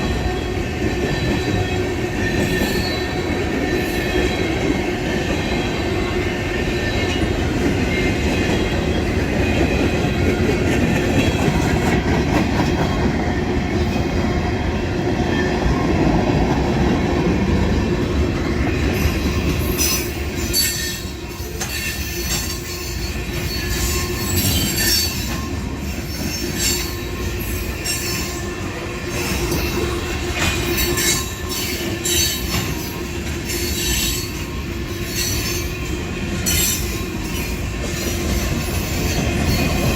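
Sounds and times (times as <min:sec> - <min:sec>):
train wheels squealing and clanking: 0:00.0 - 0:14.5, 0:18.0 - 0:39.9
freight train cars rumbling: 0:00.0 - 0:39.9.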